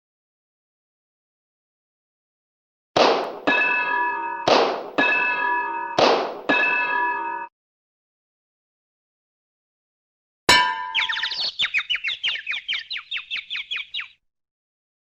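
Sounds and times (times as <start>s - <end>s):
sharp clanging hit: 3.0s - 7.5s, 10.5s - 11.3s.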